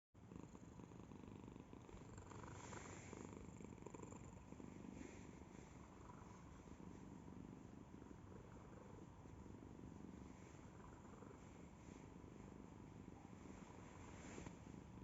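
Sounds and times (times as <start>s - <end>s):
cat purring: 0.2s - 15.0s.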